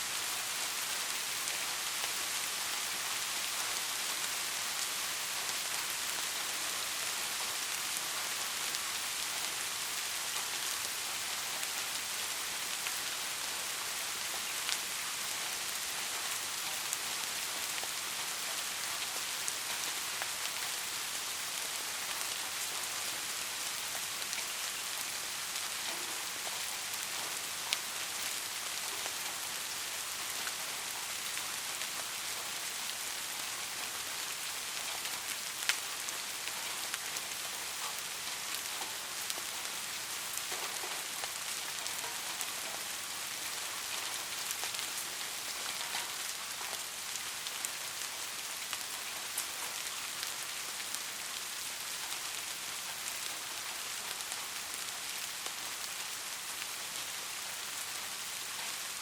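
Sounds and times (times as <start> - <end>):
steady rain falling: 0.0 - 59.0.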